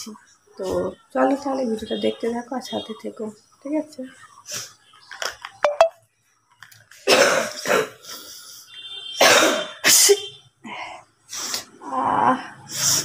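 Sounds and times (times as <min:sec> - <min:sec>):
woman coughing: 0:07.1 - 0:08.0, 0:09.2 - 0:10.3.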